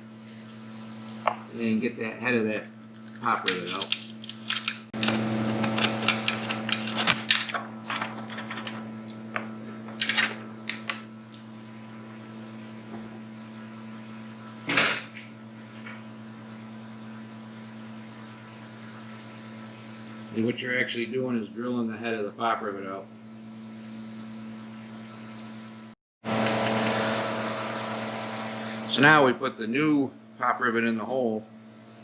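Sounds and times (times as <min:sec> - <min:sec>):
steady low hum: 0:00.0 - 0:32.0
clicks and knocks of metal tools: 0:10.0 - 0:11.2.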